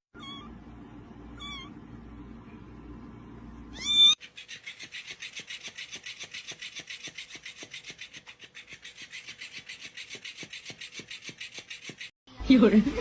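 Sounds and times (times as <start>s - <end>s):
cat meowing: 0.2s - 0.6s, 1.4s - 1.8s, 3.7s - 4.2s.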